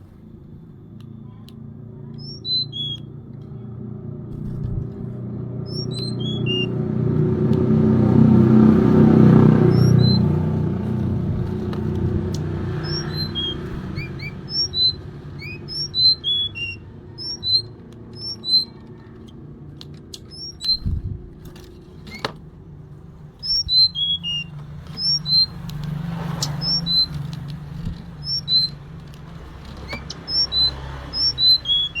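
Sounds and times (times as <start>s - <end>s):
low traffic rumble: 0.0s - 32.0s
bird whistling downslurred notes: 2.2s - 3.1s, 5.7s - 6.8s, 9.6s - 10.4s, 12.8s - 18.8s, 23.4s - 25.6s.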